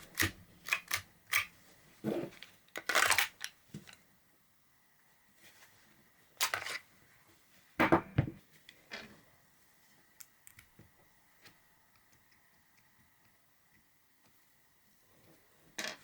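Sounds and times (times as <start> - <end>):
thumps on tabletop: 7.8 - 8.4.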